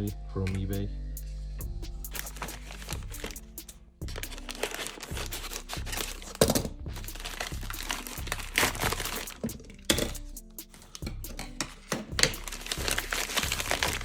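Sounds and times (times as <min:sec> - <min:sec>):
background music: 0:00.0 - 0:14.0
plastic packaging crinkling: 0:02.1 - 0:09.8, 0:12.3 - 0:14.0.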